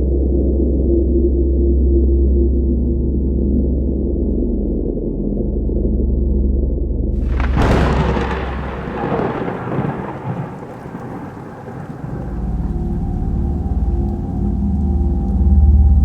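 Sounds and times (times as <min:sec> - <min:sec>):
low droning music: 0:00.0 - 0:08.4, 0:11.7 - 0:16.0
rain-like hiss: 0:07.2 - 0:16.0
thunderclap rolling: 0:07.2 - 0:16.0.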